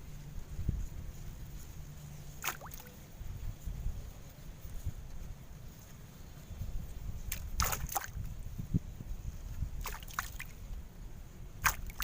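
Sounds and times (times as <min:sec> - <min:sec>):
wind rumble on microphone: 0:00.0 - 0:12.0
water splashing and sloshing: 0:02.3 - 0:03.0, 0:07.2 - 0:08.3, 0:09.8 - 0:10.6, 0:11.6 - 0:12.0.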